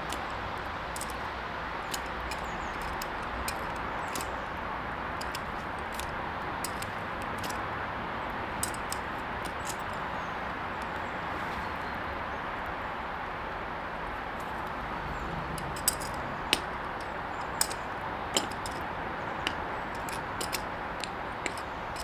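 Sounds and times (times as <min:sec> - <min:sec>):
sharp metallic clicks: 0:00.0 - 0:11.0, 0:15.4 - 0:22.0.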